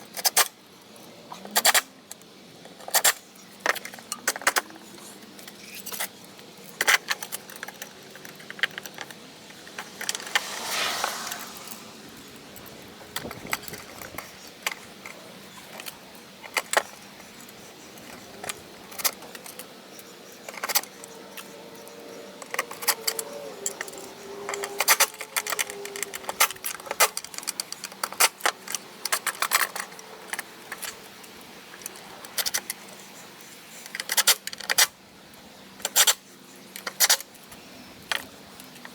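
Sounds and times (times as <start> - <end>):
metallic clicks of screws: 35.8 - 38.9.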